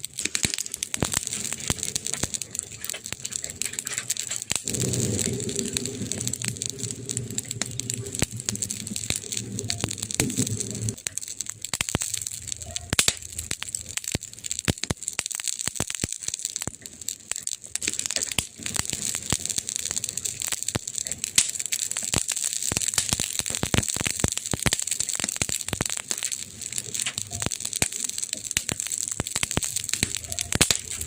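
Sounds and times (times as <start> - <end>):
wood fire crackling and popping: 0.0 - 31.0
low hum: 3.4 - 11.0.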